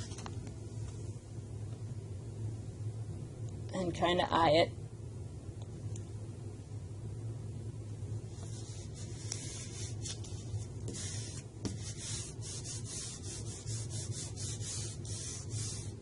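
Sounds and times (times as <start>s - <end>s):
steady low hum: 0.0s - 16.0s
vinyl rubbing on glass: 8.3s - 16.0s.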